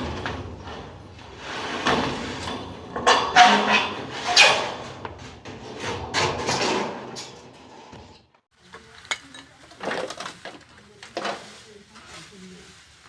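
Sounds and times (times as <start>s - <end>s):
loud bangs and rattles: 0.0s - 8.2s.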